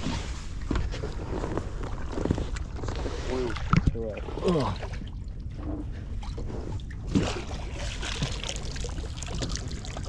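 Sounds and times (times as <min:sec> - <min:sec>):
water trickling and lapping: 0:00.0 - 0:10.0
water splashing: 0:02.6 - 0:10.0.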